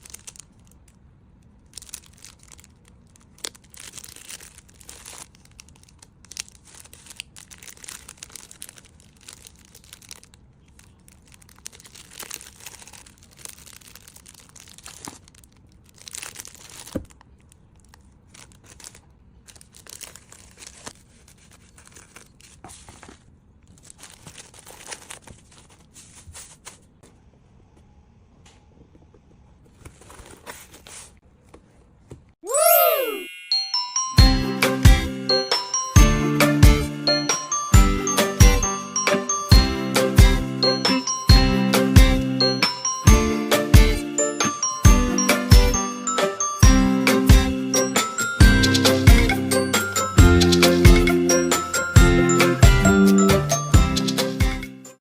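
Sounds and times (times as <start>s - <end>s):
rustling and crinkling of clay: 0.0s - 27.1s.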